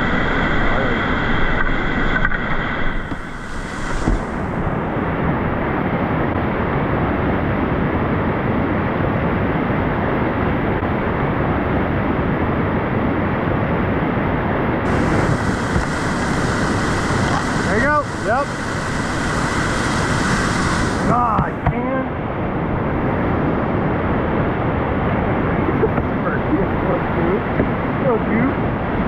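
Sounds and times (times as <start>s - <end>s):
whitewater rushing: 0.0s - 6.1s, 14.9s - 22.0s.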